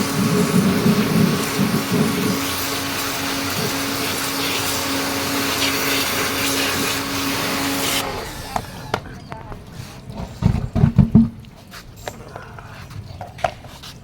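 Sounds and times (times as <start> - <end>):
pressure washer motor hum: 0.0 - 10.1
water jet hissing: 0.0 - 10.2.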